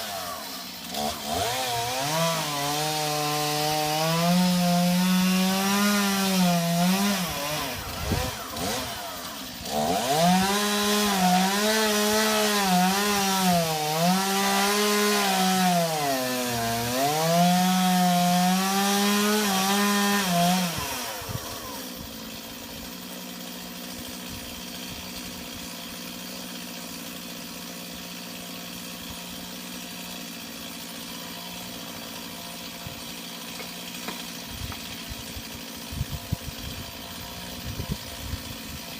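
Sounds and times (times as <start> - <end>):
chainsaw cutting wood: 0.0 - 38.9
chainsaw idling: 0.0 - 38.9.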